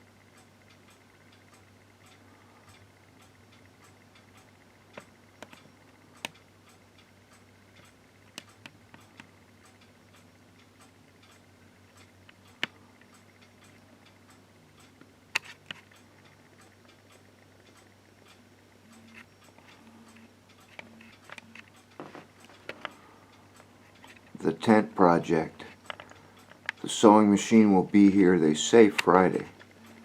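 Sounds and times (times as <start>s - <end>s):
faint regular ticking: 0.0s - 30.0s
low steady hum: 0.0s - 30.0s
sharp clicks: 28.8s - 30.0s.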